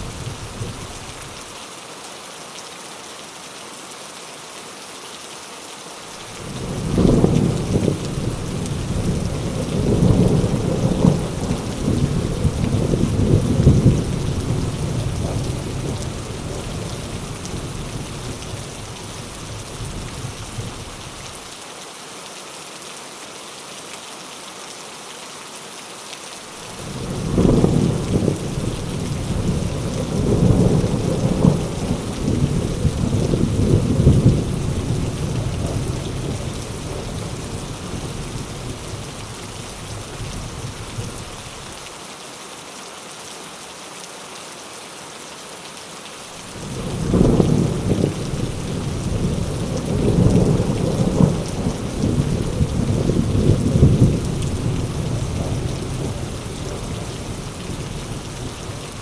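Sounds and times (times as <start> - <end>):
heavy rain: 0.0 - 59.0
thunder rolling: 6.4 - 19.0, 26.8 - 41.2, 46.5 - 59.0
sharp thunder crack: 6.6 - 15.4, 27.0 - 37.0, 46.6 - 54.8.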